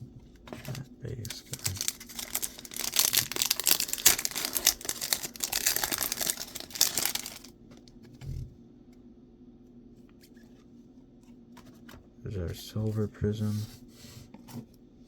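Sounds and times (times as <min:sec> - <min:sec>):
wrapper tearing and crinkling: 0:00.6 - 0:07.5.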